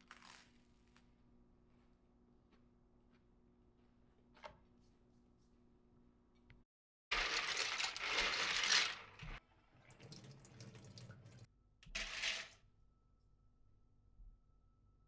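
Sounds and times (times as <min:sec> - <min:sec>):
tap water running into sink: 0:09.8 - 0:11.5.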